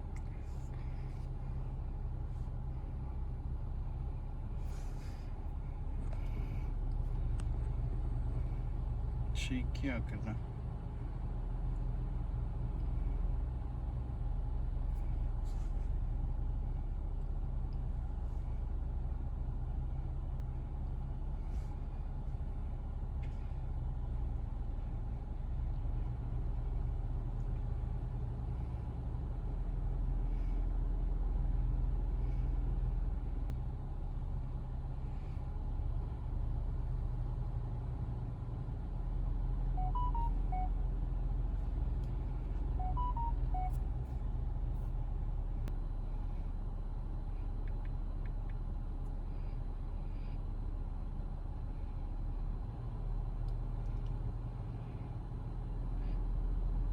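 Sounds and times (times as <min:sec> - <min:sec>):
car engine rumble and road noise: 0:00.0 - 0:56.9
soft electronic tones: 0:39.8 - 0:40.8, 0:42.7 - 0:43.9.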